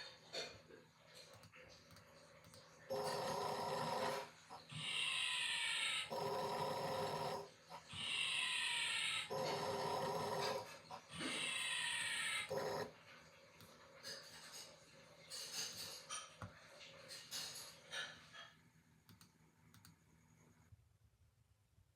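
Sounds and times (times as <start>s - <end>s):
buzzing snore: 2.9s - 5.4s, 6.0s - 8.6s, 9.2s - 11.7s, 12.4s - 12.9s.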